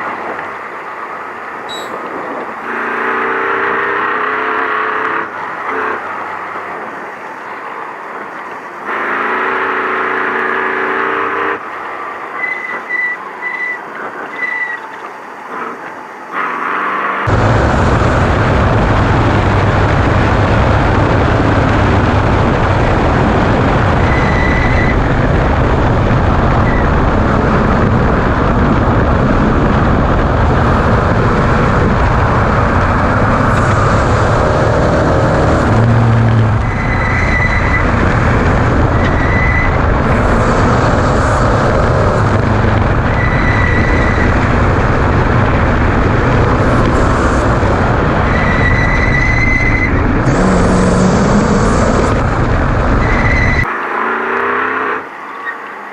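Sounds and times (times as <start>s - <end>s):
road and chassis noise: 0.0s - 55.9s
truck engine drone: 0.0s - 55.9s
short high beep: 1.7s - 2.0s.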